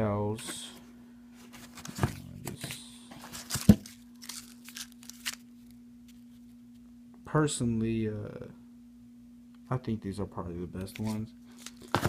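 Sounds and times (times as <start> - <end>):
steady low hum: 0.0 - 12.0
plastic packaging crinkling: 1.6 - 6.4, 10.9 - 12.0.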